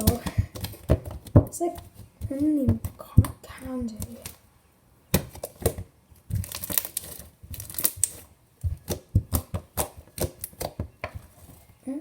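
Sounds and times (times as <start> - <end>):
slime clicking and popping: 5.1 - 10.9.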